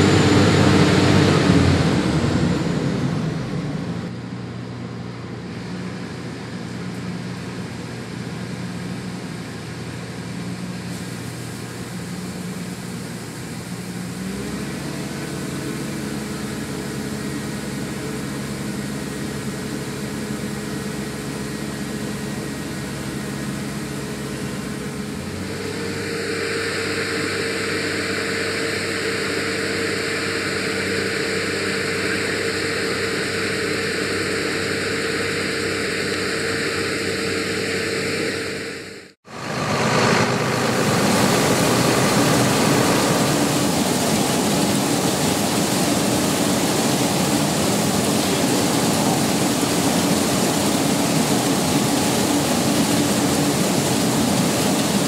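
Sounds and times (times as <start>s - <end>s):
combine harvester engine running: 0.0s - 55.0s
loud hiss: 10.5s - 16.5s, 39.6s - 55.0s.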